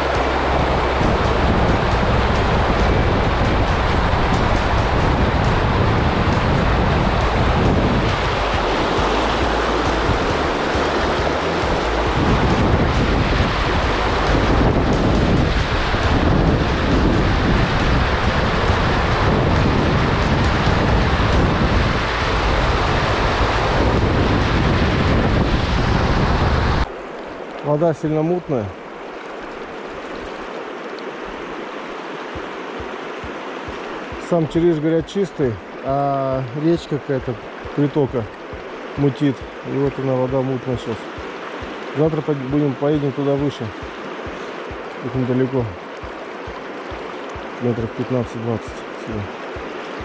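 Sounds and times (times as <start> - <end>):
wind buffeting microphone: 0.0 - 27.0
river water rushing: 0.0 - 50.0.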